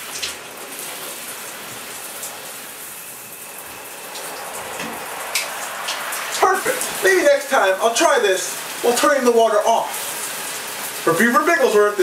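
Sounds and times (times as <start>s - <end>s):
shower water spraying: 0.0s - 12.0s.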